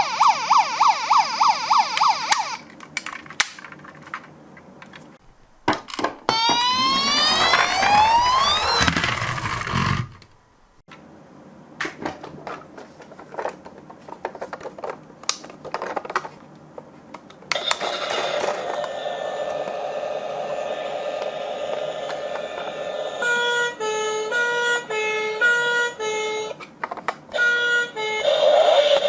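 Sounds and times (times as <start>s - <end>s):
whirring hum: 4.1s - 12.5s, 16.5s - 29.0s
loud rising whine: 6.3s - 10.4s, 17.8s - 23.8s.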